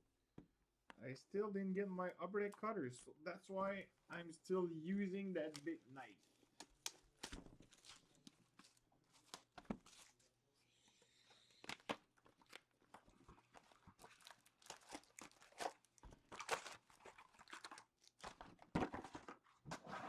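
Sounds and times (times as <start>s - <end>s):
plastic wrap crinkling: 5.5s - 10.4s, 11.6s - 19.2s
cardboard tearing: 7.2s - 10.2s, 13.6s - 19.2s.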